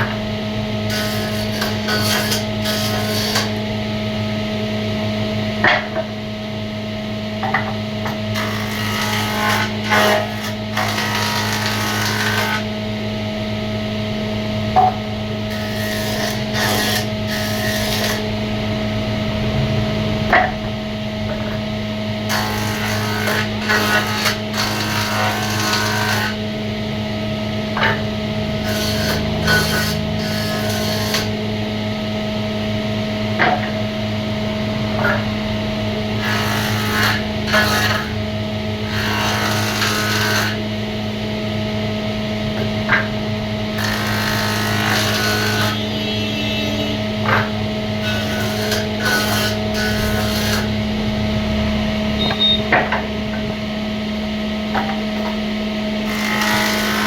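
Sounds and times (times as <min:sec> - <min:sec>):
machine humming: 0:00.0 - 0:57.0
wood scraping: 0:15.5 - 0:18.3, 0:28.6 - 0:31.3, 0:47.2 - 0:50.7.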